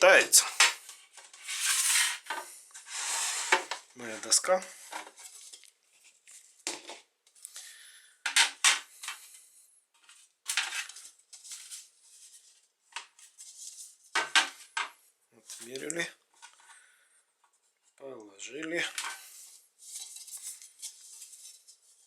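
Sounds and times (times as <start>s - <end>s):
hard items knocking and clattering: 8.2s - 8.9s, 14.2s - 14.9s.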